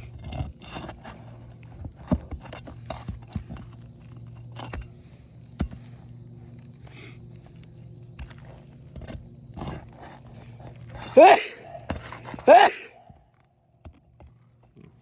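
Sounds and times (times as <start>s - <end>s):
hand tool prying up shingles: 0.0s - 5.9s, 8.2s - 12.9s.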